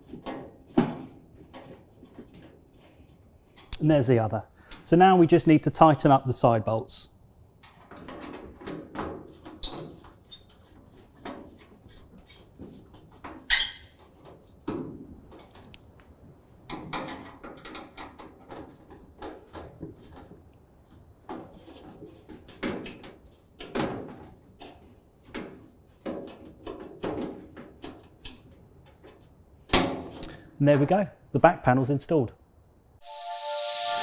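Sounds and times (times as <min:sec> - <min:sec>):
metal panels shifting: 0:07.6 - 0:15.7.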